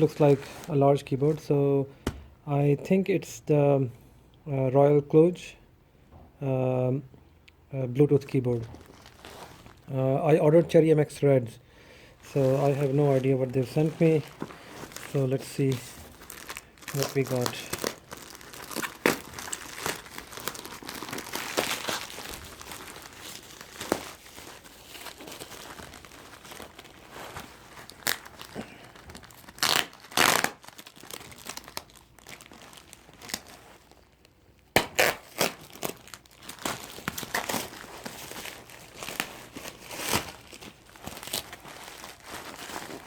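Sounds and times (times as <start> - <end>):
packaging crinkling and rustling: 8.2 - 10.4, 12.2 - 43.0
packaging ripping: 8.6 - 9.9, 12.4 - 43.0.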